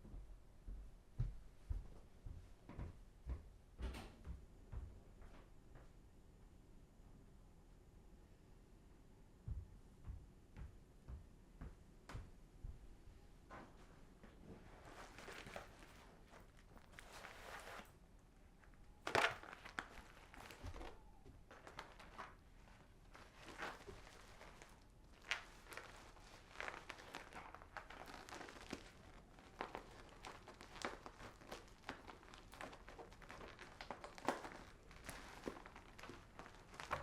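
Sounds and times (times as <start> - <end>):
rustling and crinkling: 13.5 - 37.0.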